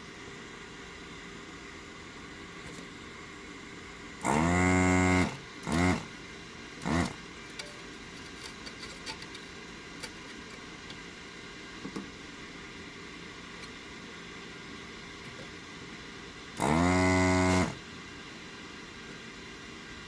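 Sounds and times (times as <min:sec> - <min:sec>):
small electric tool motor whirring: 0:04.2 - 0:06.1, 0:06.8 - 0:07.2, 0:16.6 - 0:17.8.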